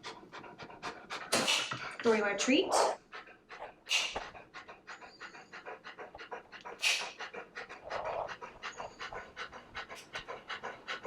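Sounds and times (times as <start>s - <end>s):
dog panting rapidly: 0.0s - 11.0s.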